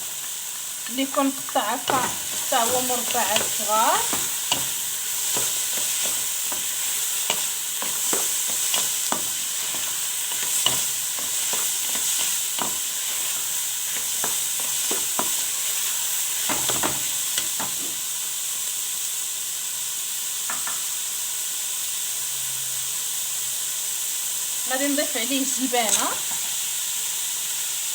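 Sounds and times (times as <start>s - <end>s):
vegetables sizzling in oil: 0.0s - 27.9s
spoon scraping and knocking pan: 1.0s - 18.0s.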